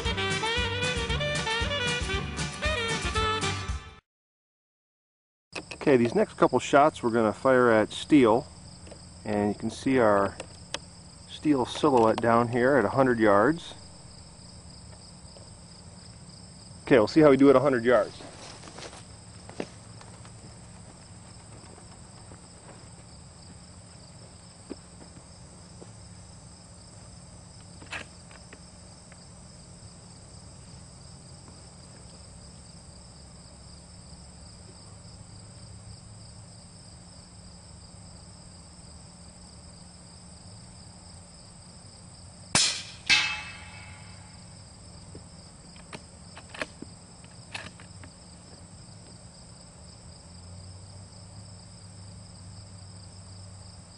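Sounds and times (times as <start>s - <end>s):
insect chirring: 5.6s - 53.9s
suppressed rifle shot: 42.6s - 43.7s
bullet pinging on steel target: 42.6s - 44.5s.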